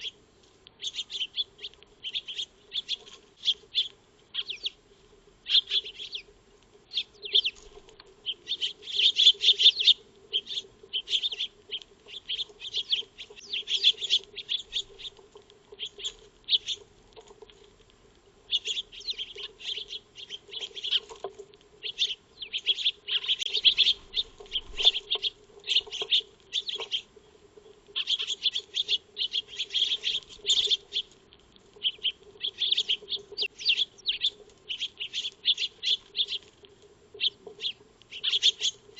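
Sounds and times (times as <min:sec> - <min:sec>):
sparrows chirping: 0:00.0 - 0:00.2, 0:00.8 - 0:04.8, 0:05.4 - 0:06.3, 0:06.9 - 0:16.9, 0:18.4 - 0:31.2, 0:31.8 - 0:36.5, 0:37.1 - 0:38.9.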